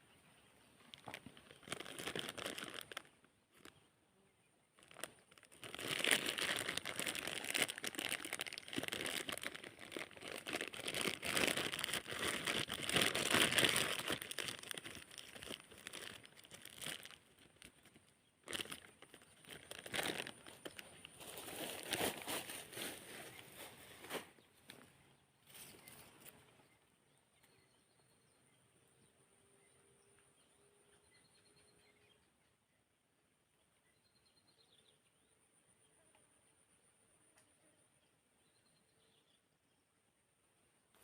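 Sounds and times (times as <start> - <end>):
crinkling and rustling handling: 0.8 - 3.9, 4.8 - 26.6.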